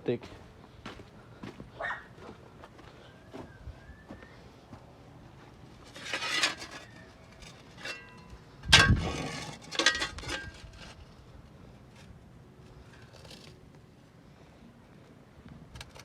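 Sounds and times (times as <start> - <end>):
metallic clinks and clanks: 5.9 - 10.8.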